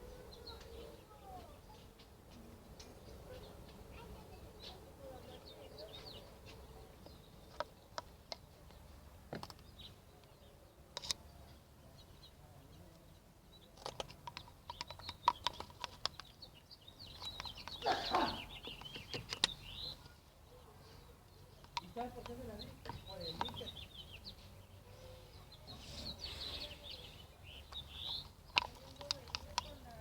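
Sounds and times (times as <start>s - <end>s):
birds chirping: 0.0s - 30.0s
small clicks and handling noises: 5.9s - 11.6s, 12.9s - 20.1s, 21.5s - 23.8s, 27.6s - 30.0s.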